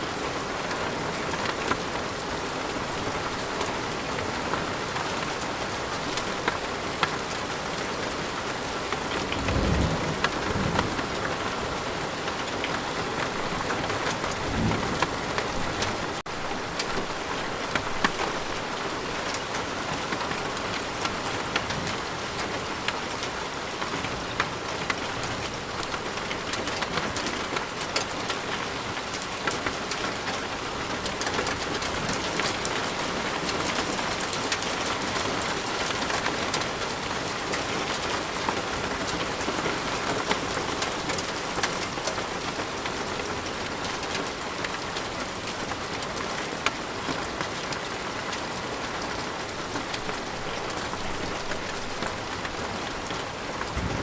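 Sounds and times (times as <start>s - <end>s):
rain pattering: 0.0s - 54.0s
low rolling thunder: 9.2s - 11.8s, 13.5s - 16.2s, 53.5s - 54.0s.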